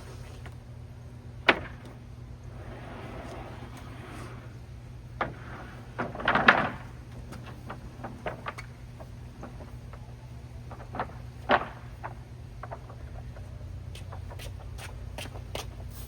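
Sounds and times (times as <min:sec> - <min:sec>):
steady low hum: 0:00.0 - 0:16.0
boards and metal pieces clattering: 0:05.2 - 0:09.7.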